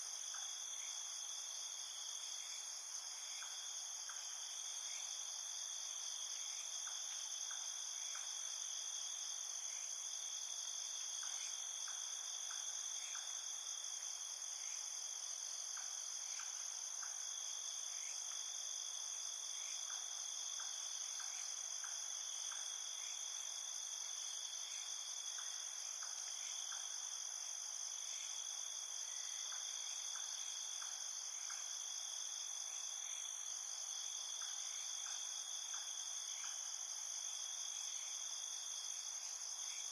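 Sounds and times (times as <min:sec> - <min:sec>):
insect ticks: 0:06.8 - 0:08.4, 0:15.7 - 0:17.2, 0:19.8 - 0:22.9, 0:29.4 - 0:31.8.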